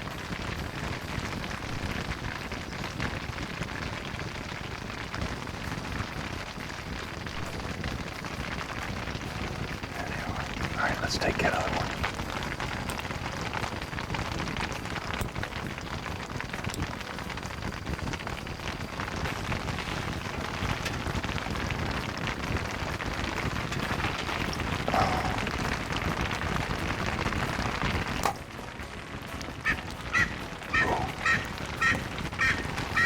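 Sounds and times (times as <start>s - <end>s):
rain falling on foliage: 0.0s - 33.0s
game bird calling: 29.6s - 33.0s.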